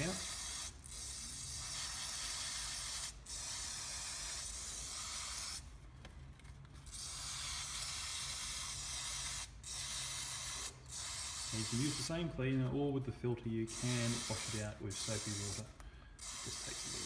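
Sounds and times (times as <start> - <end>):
aerosol spray hissing: 7.0 - 12.2, 13.7 - 17.0.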